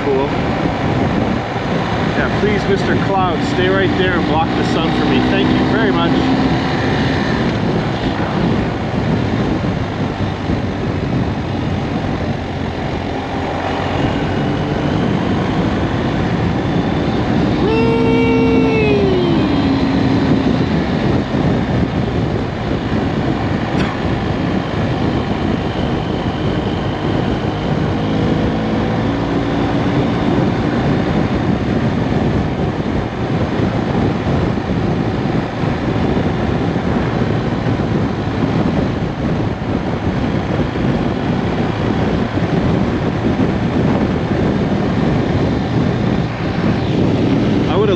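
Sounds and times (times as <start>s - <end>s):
motorcycle engine running: 0.0s - 47.9s
wind rushing over microphone: 0.0s - 47.9s
pitched sound sliding down: 17.6s - 21.0s.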